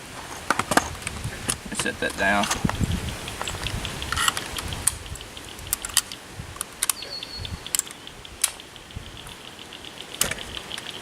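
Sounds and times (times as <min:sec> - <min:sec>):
gear clicks and knocks: 0:00.3 - 0:07.0.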